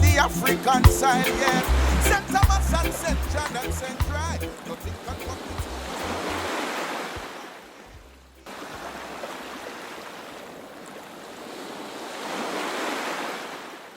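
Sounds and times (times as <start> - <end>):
sea waves washing: 0.2 - 7.8.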